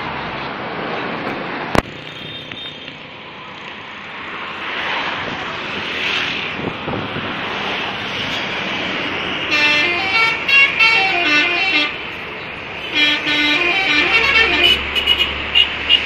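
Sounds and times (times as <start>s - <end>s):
road traffic passing: 0.0s - 16.0s
bus horn playing a tune: 9.5s - 12.2s, 12.8s - 16.0s.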